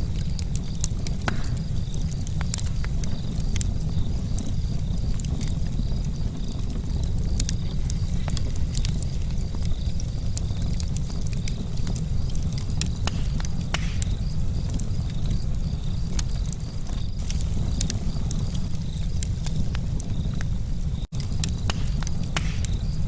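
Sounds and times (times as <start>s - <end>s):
charcoal fire crackling: 0.0s - 23.0s
low rumble: 0.0s - 23.0s
sharp pops: 0.3s - 3.7s, 10.4s - 15.4s, 20.4s - 23.0s.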